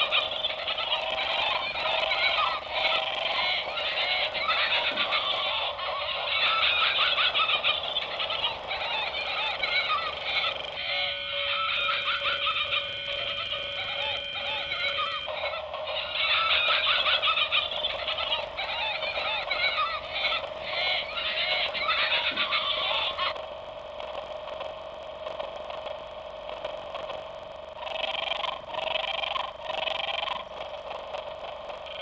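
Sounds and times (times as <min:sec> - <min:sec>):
animals chirping: 0:00.0 - 0:23.3.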